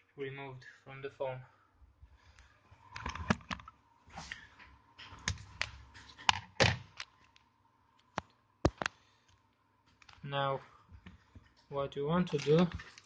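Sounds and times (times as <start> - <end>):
phone parts clicking and tapping: 8.0 - 9.0.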